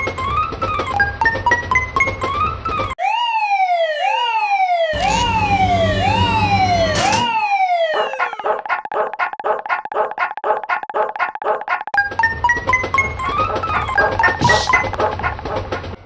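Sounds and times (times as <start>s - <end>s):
siren-like alarm wail: 3.0s - 8.6s
low buzzing rumble: 5.0s - 7.2s.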